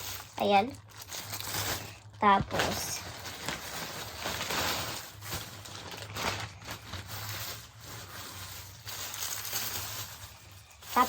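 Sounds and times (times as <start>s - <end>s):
low electrical hum: 0.0s - 11.0s
plastic packaging crinkling: 0.0s - 11.0s.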